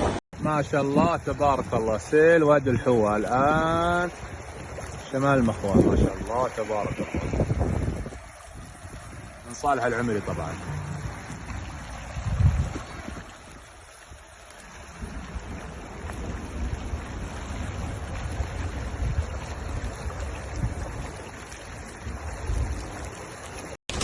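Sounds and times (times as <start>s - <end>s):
flood water rushing: 0.0s - 24.0s
wind buffeting microphone: 0.0s - 24.0s.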